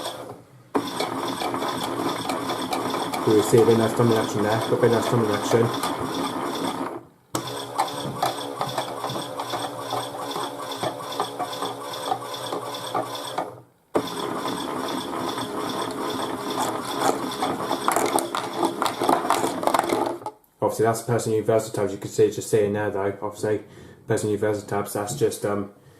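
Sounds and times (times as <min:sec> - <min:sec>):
toy washing machine gears rattling: 0:00.8 - 0:06.8, 0:07.6 - 0:13.5, 0:15.8 - 0:20.3.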